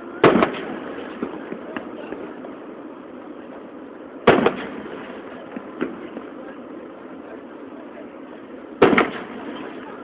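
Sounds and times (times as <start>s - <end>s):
fireworks booming: 0.0s - 7.2s, 8.7s - 10.0s
crackling firework pops: 0.2s - 2.3s, 4.3s - 6.3s, 8.8s - 10.0s.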